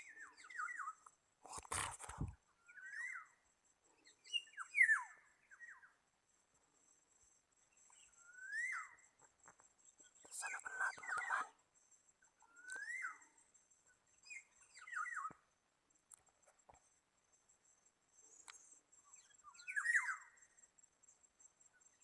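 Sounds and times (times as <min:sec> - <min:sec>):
harsh scratchy bird chatter: 0:01.5 - 0:02.3, 0:10.2 - 0:11.6.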